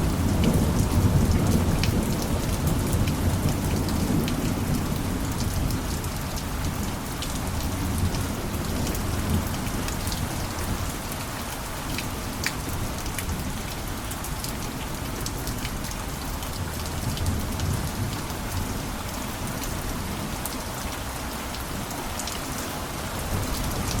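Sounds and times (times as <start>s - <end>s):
rain falling: 0.0s - 24.0s
raindrops ticking: 0.0s - 24.0s.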